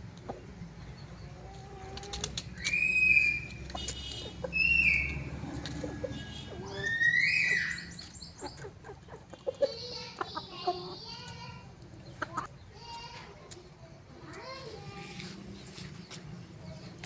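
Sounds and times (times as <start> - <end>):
roosters crowing: 1.5 - 8.0.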